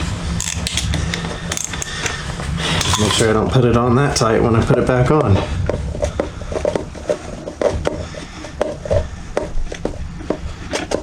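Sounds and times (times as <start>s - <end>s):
metallic clicks of hand tools: 0.0s - 2.2s, 2.8s - 3.3s.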